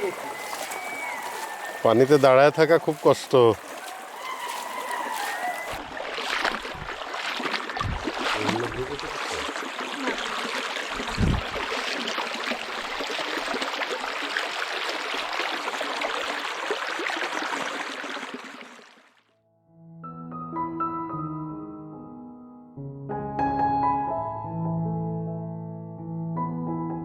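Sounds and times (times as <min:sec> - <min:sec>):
water rushing and splashing: 0:00.0 - 0:19.2.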